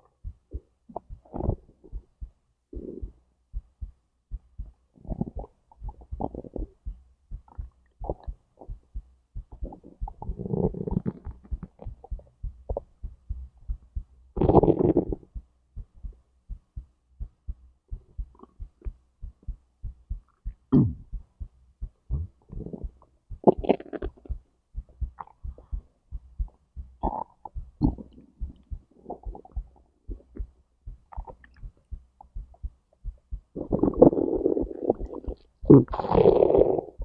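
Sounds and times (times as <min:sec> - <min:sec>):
heartbeat thumps: 0:00.0 - 0:37.0
stomach gurgling: 0:00.5 - 0:02.0, 0:05.0 - 0:06.8, 0:07.4 - 0:08.8, 0:09.5 - 0:12.9, 0:14.4 - 0:15.3, 0:22.1 - 0:24.4, 0:27.0 - 0:30.5, 0:31.1 - 0:32.6, 0:33.6 - 0:37.0.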